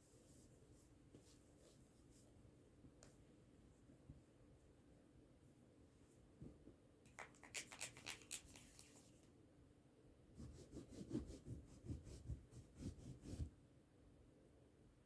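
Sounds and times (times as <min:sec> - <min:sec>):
rubbing strokes on phone: 0:07.3 - 0:09.2, 0:10.4 - 0:13.6.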